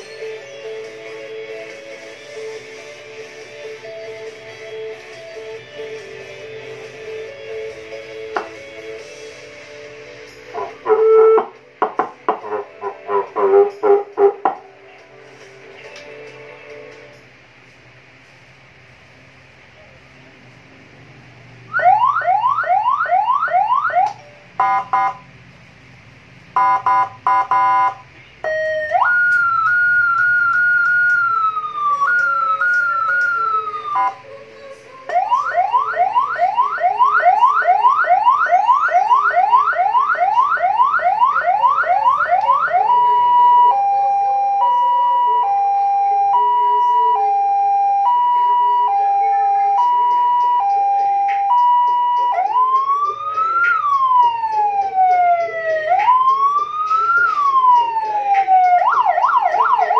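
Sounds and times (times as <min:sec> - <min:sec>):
electronic alarm siren: 0:10.5 - 0:11.6, 0:21.7 - 0:25.2, 0:26.6 - 0:34.2, 0:35.1 - 0:59.9.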